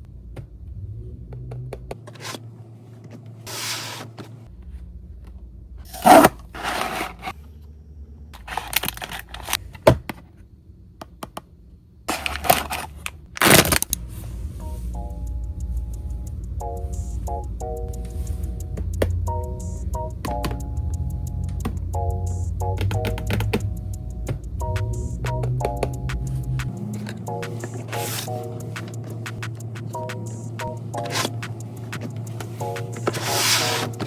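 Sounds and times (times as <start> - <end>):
packaging rustling and tearing: 5.9 - 7.4, 8.4 - 9.6, 12.1 - 14.0.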